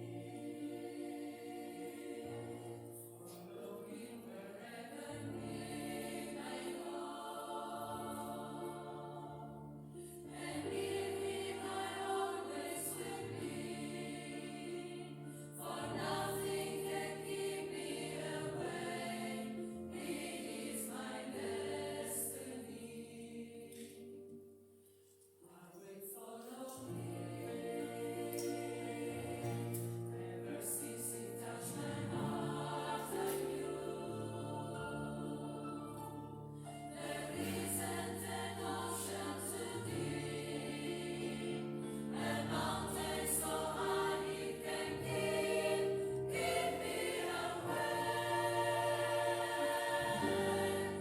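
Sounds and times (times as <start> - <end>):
choir singing sustained chords: 0.0 - 24.7, 25.4 - 51.0.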